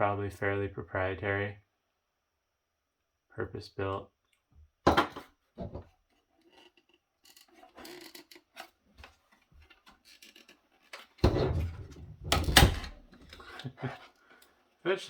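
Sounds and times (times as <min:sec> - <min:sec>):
plastic scraping and rubbing: 0:06.4 - 0:14.2.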